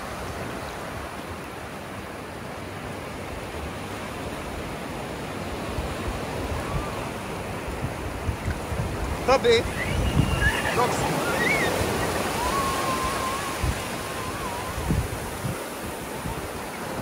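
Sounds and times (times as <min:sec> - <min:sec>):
waves washing onto beach: 0:00.0 - 0:17.0
wind rumble on microphone: 0:05.6 - 0:17.0.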